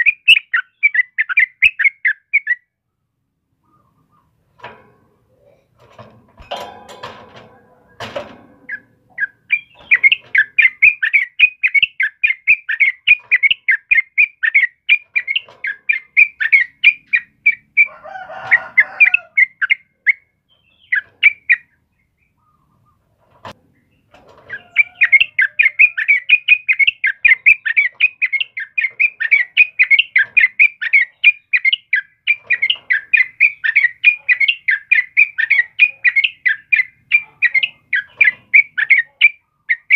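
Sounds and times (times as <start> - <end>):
bird singing rapid chattering notes: 0.0 - 2.7, 7.5 - 39.9.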